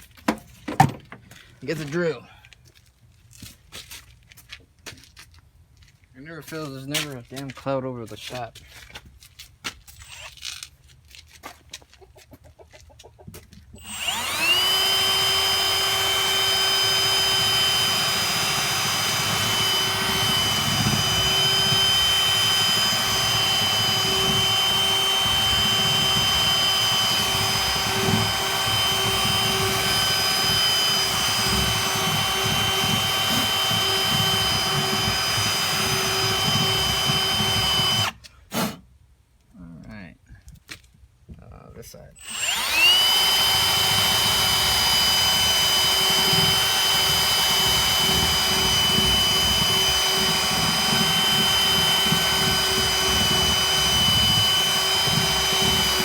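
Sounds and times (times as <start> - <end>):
electric drill running: 10.0 - 10.4, 13.8 - 38.2, 42.2 - 56.0.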